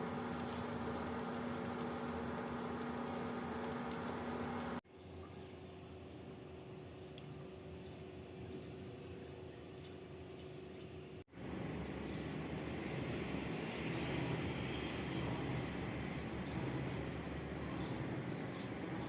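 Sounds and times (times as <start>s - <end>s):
distant traffic noise: 11.4s - 19.0s.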